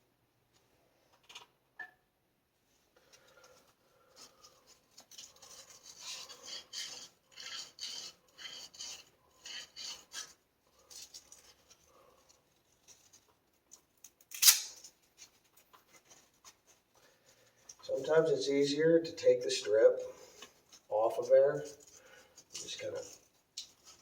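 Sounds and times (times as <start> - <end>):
emery cloth scratching copper pipe: 3.5 - 13.3, 19.3 - 24.0.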